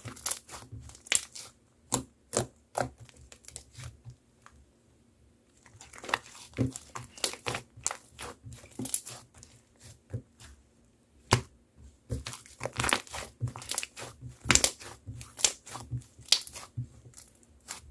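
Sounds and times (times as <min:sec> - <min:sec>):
slime crackling and popping: 0:00.0 - 0:01.5, 0:05.8 - 0:09.2, 0:12.2 - 0:17.8.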